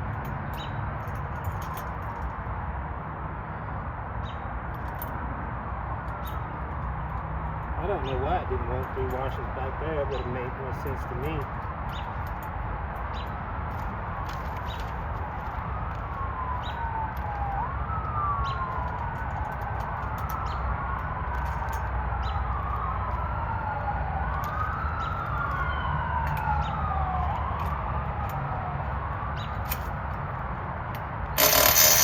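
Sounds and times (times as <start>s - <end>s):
emergency siren wailing: 7.2s - 11.6s, 13.9s - 32.0s.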